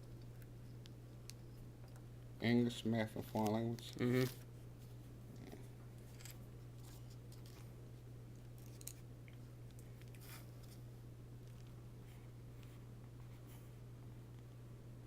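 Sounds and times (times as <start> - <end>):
low electrical hum: 0.0 - 15.0
clicks and rustles of laptop parts: 6.0 - 7.7, 8.4 - 9.1.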